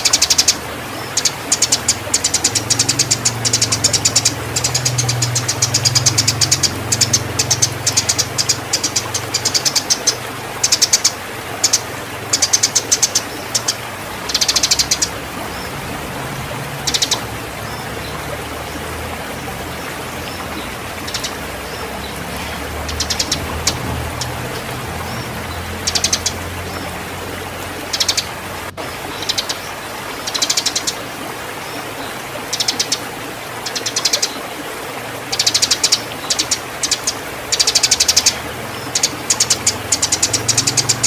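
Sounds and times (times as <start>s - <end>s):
sparrows chattering chirps: 0.0s - 15.8s, 16.8s - 18.8s, 19.6s - 27.0s, 27.8s - 31.0s, 31.6s - 33.0s, 33.6s - 34.4s, 35.3s - 41.0s.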